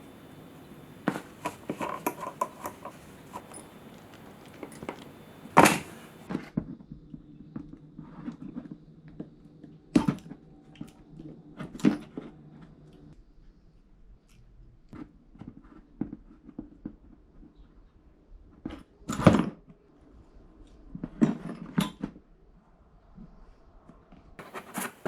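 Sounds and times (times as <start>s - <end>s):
light clicks and knocks: 0.0s - 6.3s.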